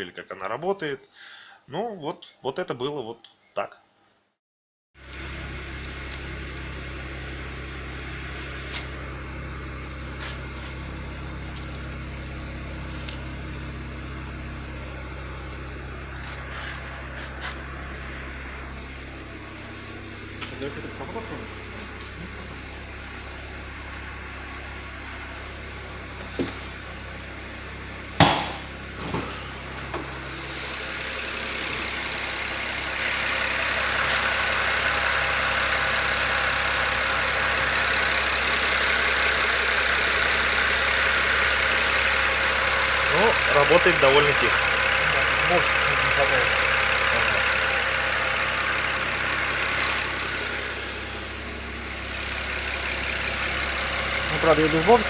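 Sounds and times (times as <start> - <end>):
car engine idling: 5.0 - 55.0
loud sharp bang: 28.2 - 28.7
small engine knock: 28.2 - 29.3.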